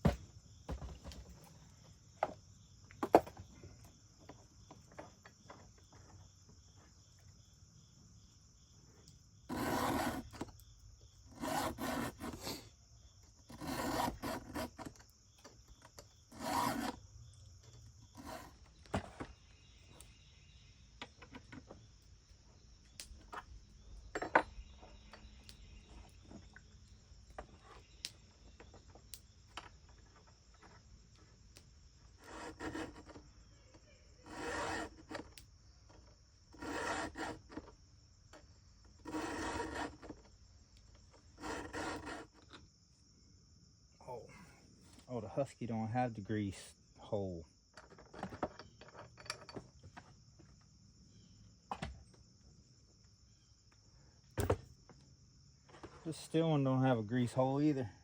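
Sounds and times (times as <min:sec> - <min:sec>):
file rasping on chainsaw chain: 0:09.5 - 0:10.4, 0:11.3 - 0:12.6, 0:13.5 - 0:15.0, 0:16.3 - 0:17.0, 0:18.2 - 0:18.6, 0:32.2 - 0:33.2, 0:34.2 - 0:35.2, 0:36.5 - 0:37.7, 0:39.0 - 0:40.2, 0:41.4 - 0:42.6.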